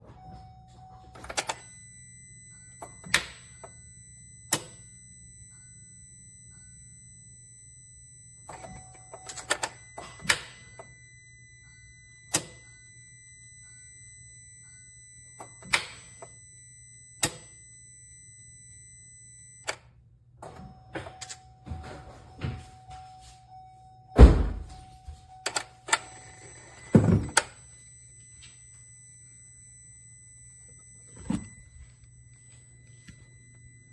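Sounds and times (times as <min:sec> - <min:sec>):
faint steady hum: 0:00.0 - 0:33.9
loud thump: 0:24.2 - 0:24.7
thin high electronic tone: 0:24.2 - 0:33.9.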